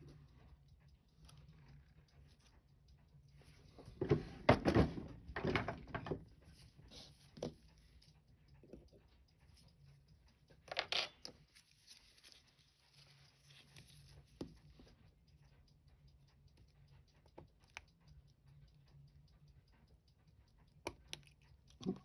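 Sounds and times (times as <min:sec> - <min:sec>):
low steady hum: 0:00.0 - 0:22.0
watch tools clicking and scraping: 0:00.0 - 0:22.0.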